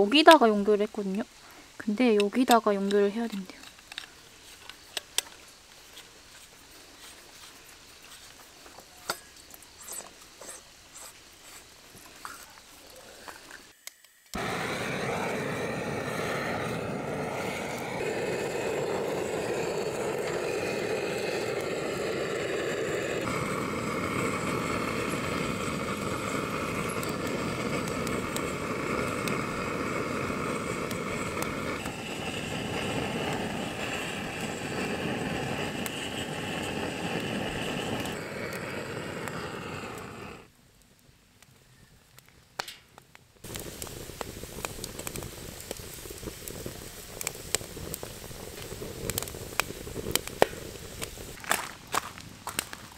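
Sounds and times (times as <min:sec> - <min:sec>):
gas torch hissing: 0:09.2 - 0:11.8, 0:13.4 - 0:40.5, 0:43.4 - 0:51.4.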